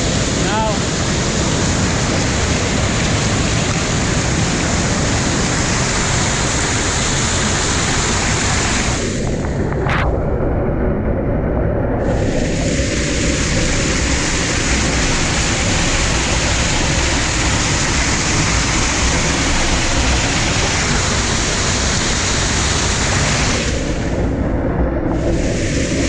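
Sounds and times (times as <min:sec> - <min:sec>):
waterfall rushing and splashing: 0:00.0 - 0:26.0.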